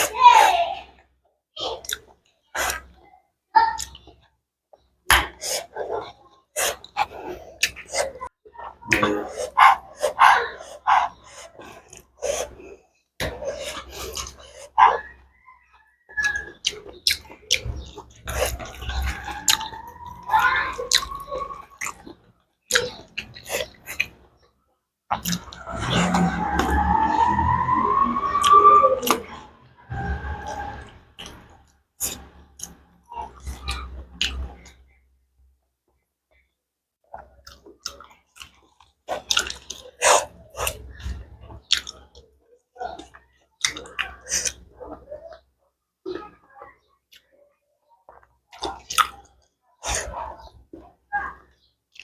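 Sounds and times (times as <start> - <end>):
wet chewing and lip-smacking: 1.7 - 3.0, 13.2 - 15.1, 16.1 - 24.3, 25.1 - 26.0, 31.2 - 34.9, 37.1 - 42.3, 42.9 - 45.1, 48.1 - 50.6
faint rising tone: 25.6 - 31.6.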